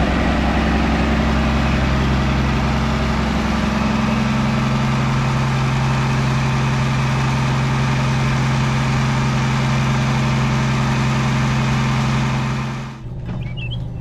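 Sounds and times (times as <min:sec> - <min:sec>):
engine running steadily: 0:00.0 - 0:14.0
bird chirps: 0:13.3 - 0:14.0.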